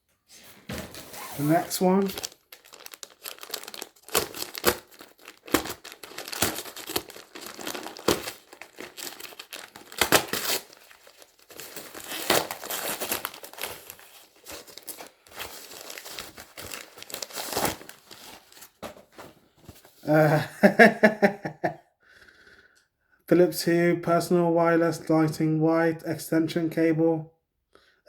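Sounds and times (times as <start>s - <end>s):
packaging crinkling and tearing: 0.9s - 20.0s.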